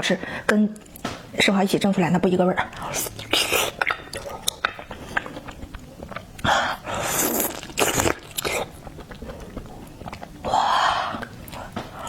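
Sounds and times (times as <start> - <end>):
wet chewing: 2.6 - 12.0
mouth smacks and clicks: 2.7 - 12.0.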